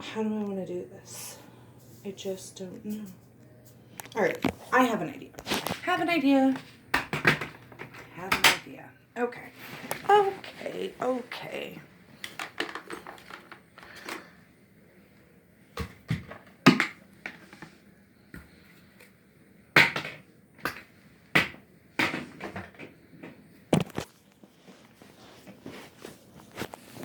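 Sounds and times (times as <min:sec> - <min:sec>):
objects knocking and clattering: 0:06.9 - 0:08.6, 0:12.2 - 0:14.3, 0:15.8 - 0:17.7, 0:19.8 - 0:24.2.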